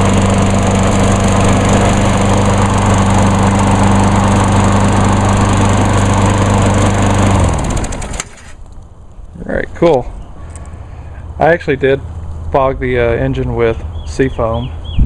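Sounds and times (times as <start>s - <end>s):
lawn mower engine running: 0.0s - 8.6s.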